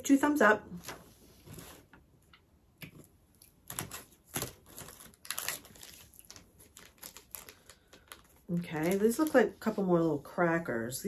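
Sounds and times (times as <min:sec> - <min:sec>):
plastic snack wrapper crinkling: 0:03.4 - 0:09.4.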